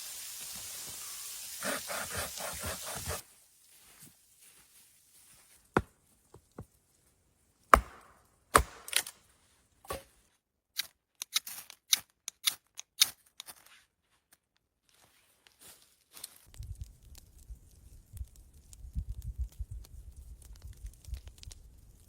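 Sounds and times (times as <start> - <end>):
heavy knocks: 7.8 - 8.8.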